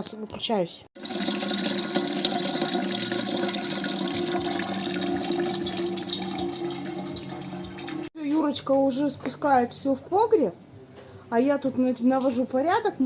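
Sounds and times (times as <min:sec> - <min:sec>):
water running: 0:01.0 - 0:08.1.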